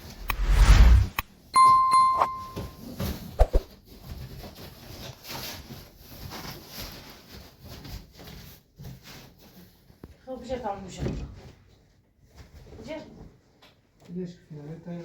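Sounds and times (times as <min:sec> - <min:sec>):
metal ringing ding: 0:01.6 - 0:02.7.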